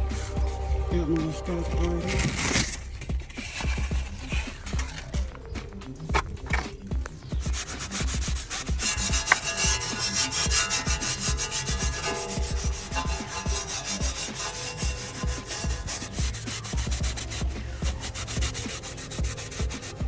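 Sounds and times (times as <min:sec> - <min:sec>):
abrasive pad scrubbing: 0:00.0 - 0:20.0.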